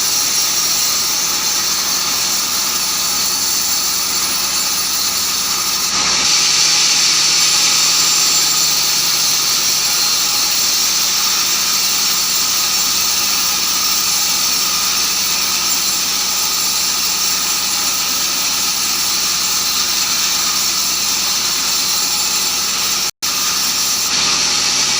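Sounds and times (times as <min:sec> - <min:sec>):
bandsaw blade whining: 0:00.0 - 0:24.9.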